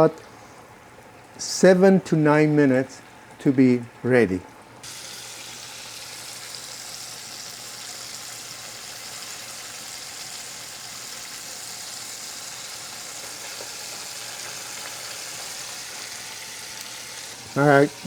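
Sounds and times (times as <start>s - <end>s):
chicken deep-frying in oil: 4.8s - 18.0s.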